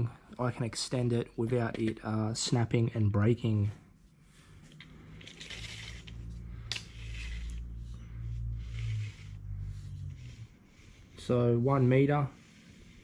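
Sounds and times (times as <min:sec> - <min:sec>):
low steady hum: 0:00.0 - 0:13.0
tape measure blade rasping out: 0:05.1 - 0:10.5.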